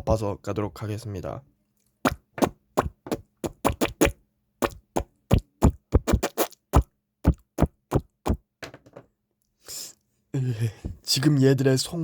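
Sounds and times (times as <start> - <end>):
rapid sharp taps: 2.1 - 8.4.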